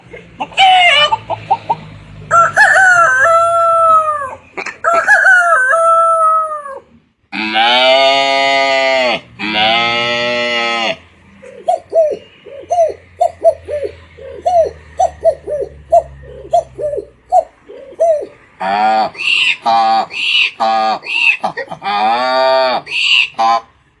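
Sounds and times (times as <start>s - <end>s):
hen-like clucks: 0.0s - 7.0s, 11.3s - 23.7s
person imitating rooster crows: 2.3s - 10.0s
loud buzzy animal calls: 18.6s - 23.7s.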